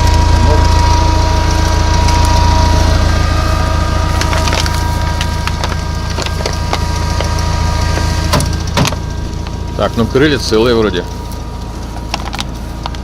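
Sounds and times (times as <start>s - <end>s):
vehicle engine droning: 0.0s - 13.0s
branches cracking and snapping: 1.5s - 9.8s, 11.2s - 13.0s.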